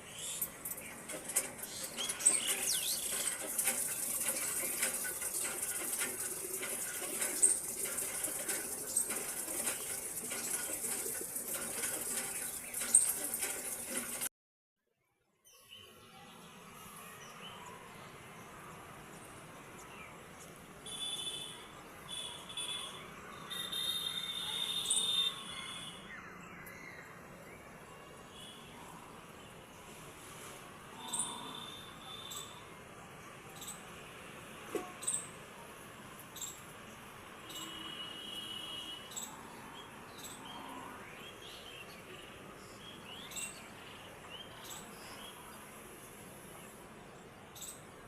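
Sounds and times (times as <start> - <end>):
faint bird chirps: 31.0 - 32.7.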